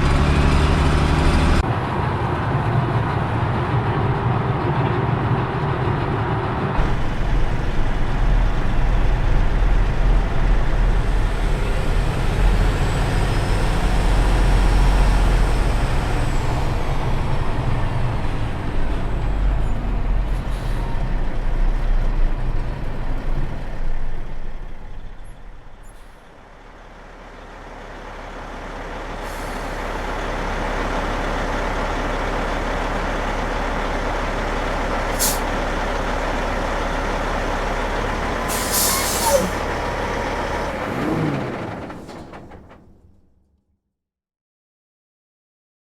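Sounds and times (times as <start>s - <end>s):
heavy diesel truck engine: 0.0s - 43.5s
brief hiss: 38.5s - 39.6s.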